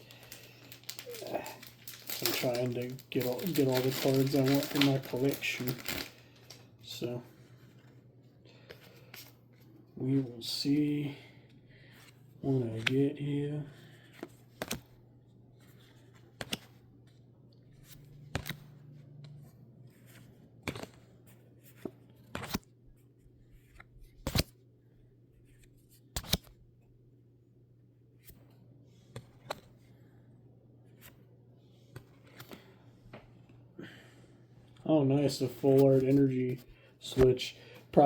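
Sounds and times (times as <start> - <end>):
cards and foil wrapper snapping: 0.0 - 6.6.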